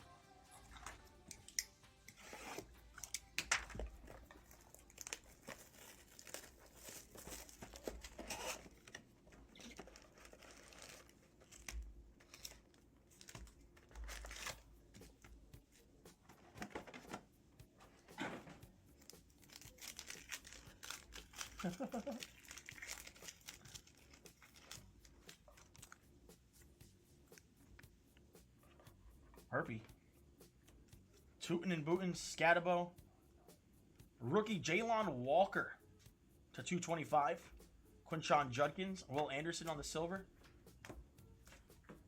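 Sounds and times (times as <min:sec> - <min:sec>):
wrappers tearing and crinkling: 0:02.1 - 0:14.7, 0:19.0 - 0:26.0.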